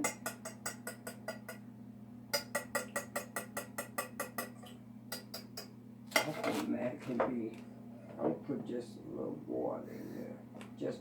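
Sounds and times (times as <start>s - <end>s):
utensil clinking against bowl: 0.0s - 1.6s, 2.4s - 5.5s
faint steady hum: 0.0s - 11.0s.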